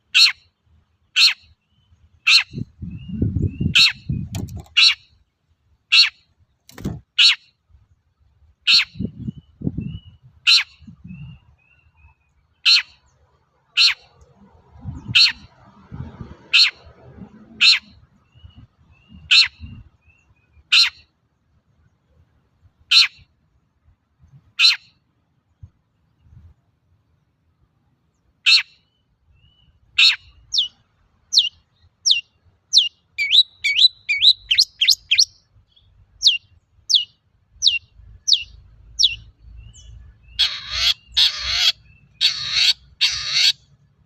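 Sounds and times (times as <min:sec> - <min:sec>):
bird harsh calls: 0:00.0 - 0:00.5, 0:01.1 - 0:05.2, 0:05.9 - 0:07.5, 0:11.8 - 0:14.2, 0:16.4 - 0:21.1, 0:22.9 - 0:23.2, 0:24.6 - 0:24.9, 0:28.4 - 0:35.4, 0:36.2 - 0:43.7.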